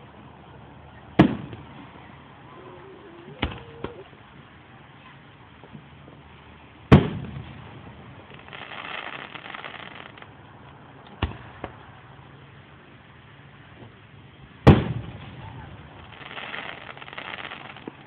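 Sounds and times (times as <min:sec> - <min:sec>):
fireworks crackling: 0:00.0 - 0:18.0
fireworks bang and pop: 0:01.1 - 0:02.0, 0:03.4 - 0:04.0, 0:06.9 - 0:12.0, 0:14.6 - 0:18.0
fireworks booming: 0:01.2 - 0:02.0, 0:03.4 - 0:04.1, 0:06.9 - 0:10.4, 0:11.1 - 0:12.0, 0:14.6 - 0:18.0.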